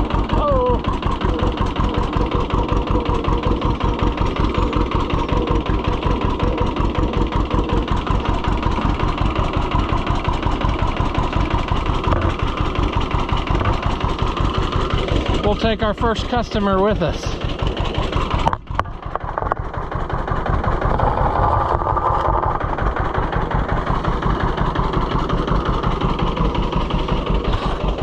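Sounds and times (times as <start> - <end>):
tractor engine running: 0.0 - 28.0.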